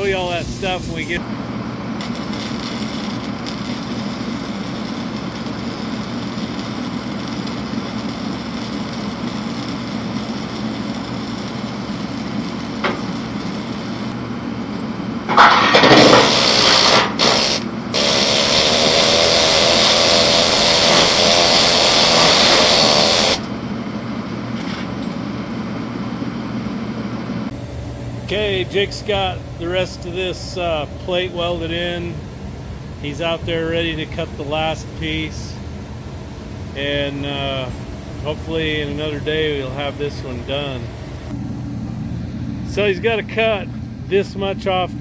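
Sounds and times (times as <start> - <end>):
harsh hiss of metal scraping: 0.0 - 1.2, 16.0 - 23.4, 27.5 - 44.9
steady background hum: 0.0 - 45.0.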